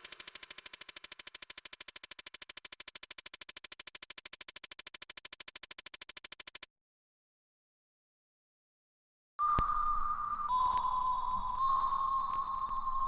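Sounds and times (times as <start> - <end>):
rapid synthesizer pulse: 0.0 - 6.7.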